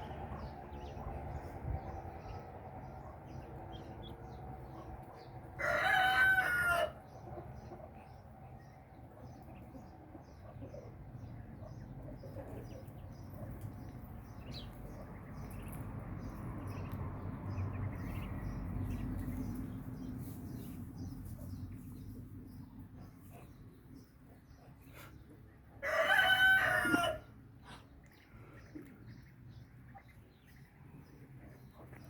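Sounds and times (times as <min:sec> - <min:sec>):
low rumbling background: 0:00.0 - 0:05.6, 0:06.9 - 0:25.8.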